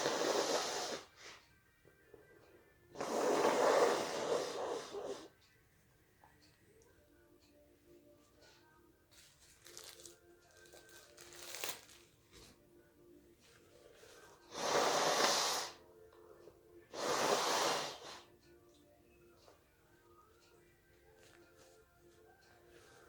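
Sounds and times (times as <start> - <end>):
person blowing nose: 0.0 - 1.4, 3.0 - 5.3, 14.5 - 15.8, 16.9 - 18.3.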